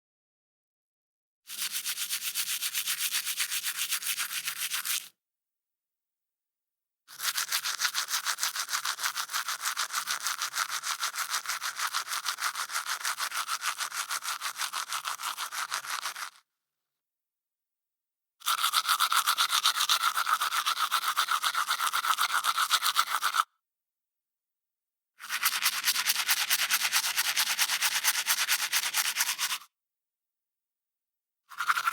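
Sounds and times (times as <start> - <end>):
toothbrush scrubbing teeth: 1.5 - 5.1, 7.1 - 16.4, 18.4 - 23.4, 25.2 - 29.6, 31.5 - 31.9.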